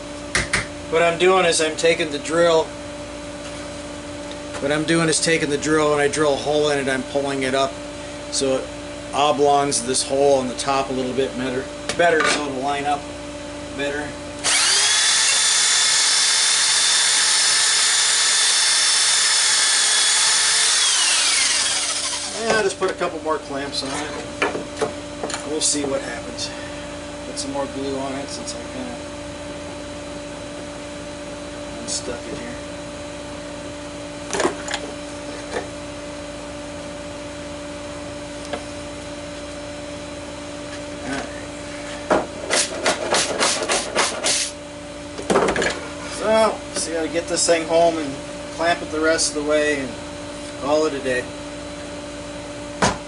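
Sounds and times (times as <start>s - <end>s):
steady machine hum: 0.0s - 53.0s
electric drill whining: 14.4s - 22.6s.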